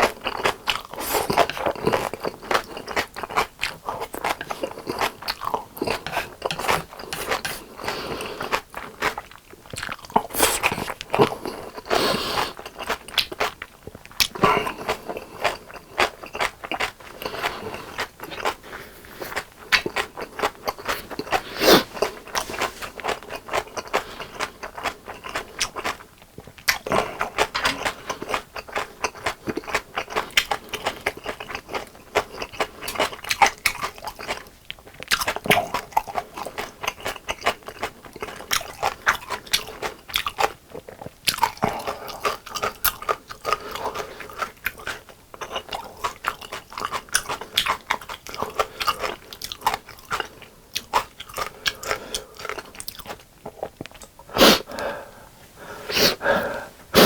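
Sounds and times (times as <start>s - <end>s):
crunching and chewing fried chicken: 0.0s - 55.2s.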